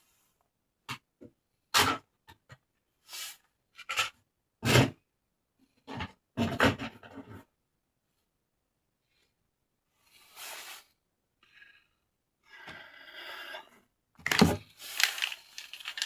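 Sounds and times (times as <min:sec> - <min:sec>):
toy packaging rustling: 0:14.2 - 0:16.0.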